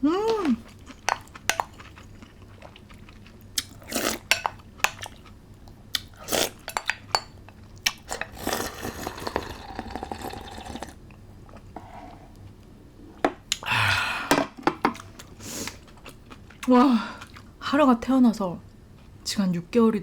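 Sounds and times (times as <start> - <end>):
crunchy chewing: 0.6 - 5.3.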